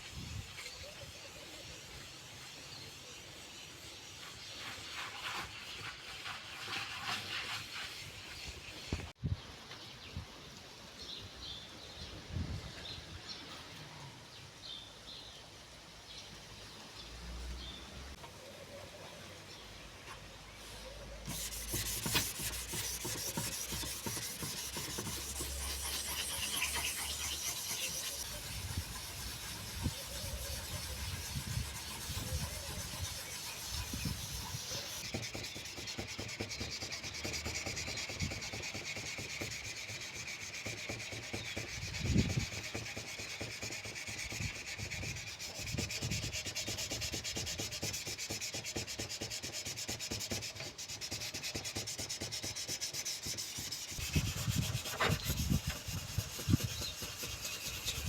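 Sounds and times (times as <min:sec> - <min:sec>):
sandpaper rubbing back and forth: 0:00.1 - 0:09.0, 0:20.6 - 0:58.0.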